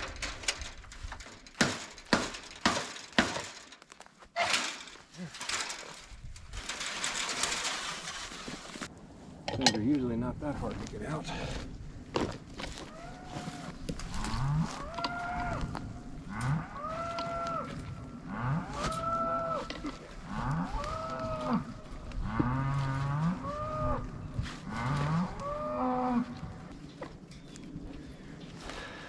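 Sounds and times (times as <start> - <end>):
cattle mooing: 16.3 - 19.6.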